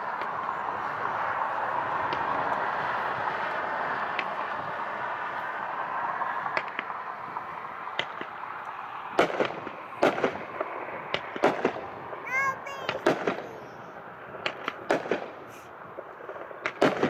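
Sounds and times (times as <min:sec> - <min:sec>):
fireworks reports: 0:09.2 - 0:17.0.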